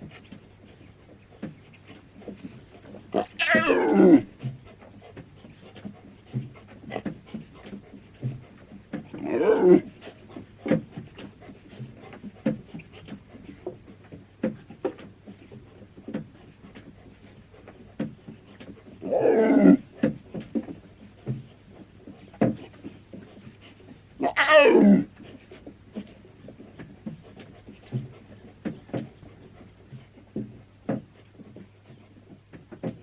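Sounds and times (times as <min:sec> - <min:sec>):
lion grunts and breaths: 0:00.0 - 0:33.0
lion roaring: 0:03.2 - 0:04.3, 0:09.2 - 0:09.9, 0:19.0 - 0:19.8, 0:24.2 - 0:25.1.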